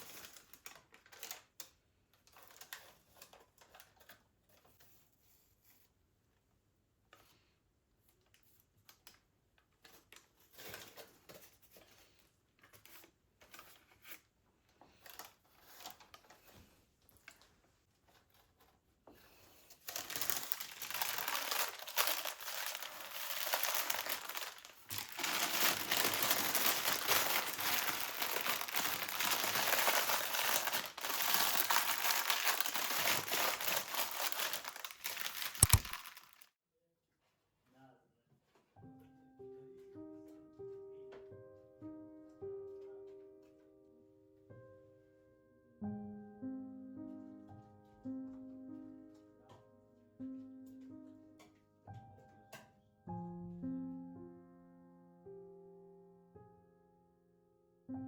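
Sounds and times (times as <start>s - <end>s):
continuous crinkling and crackling: 0.0s - 5.8s, 7.1s - 36.5s
faint handling noises: 8.0s - 36.4s.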